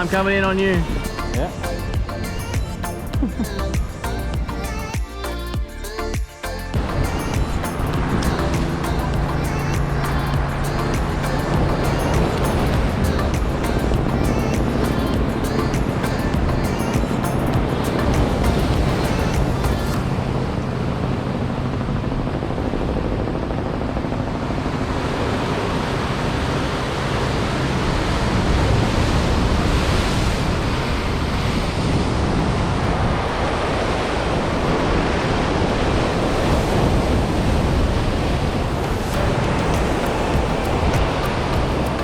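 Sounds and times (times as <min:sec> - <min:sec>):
waves washing against rocks: 0:25.7 - 0:42.0
wind buffeting microphone: 0:27.3 - 0:42.0.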